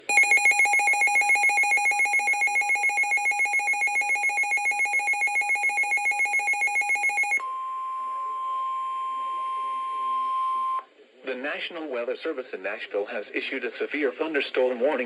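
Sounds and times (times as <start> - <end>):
electronic warbling alarm: 0.0 - 7.4
steady single-pitch alert tone: 0.0 - 7.4.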